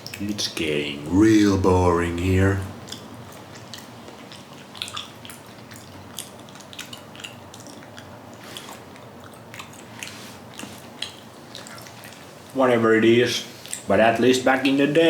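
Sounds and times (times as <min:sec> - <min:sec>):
person chewing wetly: 0:02.8 - 0:12.5, 0:13.6 - 0:13.9.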